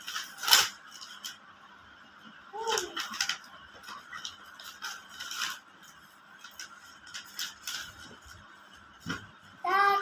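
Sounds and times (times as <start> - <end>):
packaging scraping and rustling: 0.0 - 1.4, 2.7 - 8.7.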